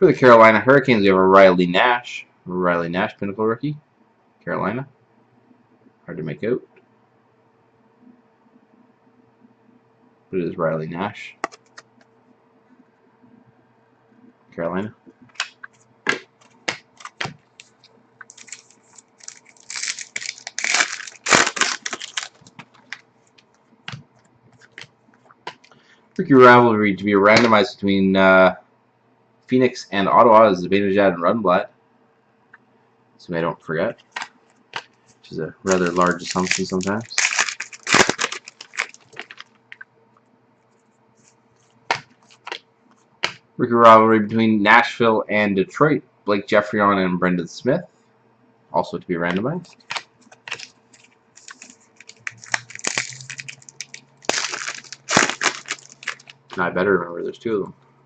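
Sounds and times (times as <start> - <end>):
faint steady hum: 0.0 - 58.0
cards clicking and tapping: 11.4 - 11.9, 15.3 - 20.0
foil wrapper crinkling and tearing: 16.4 - 23.0, 35.6 - 39.8, 42.2 - 42.6, 49.8 - 56.6.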